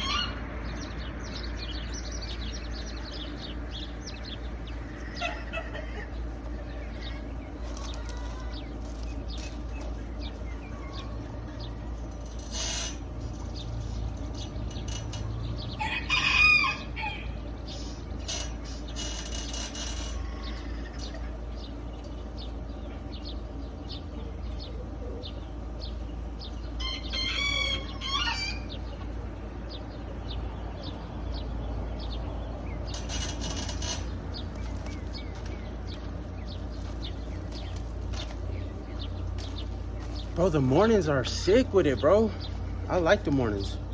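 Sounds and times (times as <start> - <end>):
rooster crowing: 0.0 - 0.4, 15.7 - 17.5, 19.7 - 21.3, 26.8 - 28.9
low hum: 0.0 - 43.9.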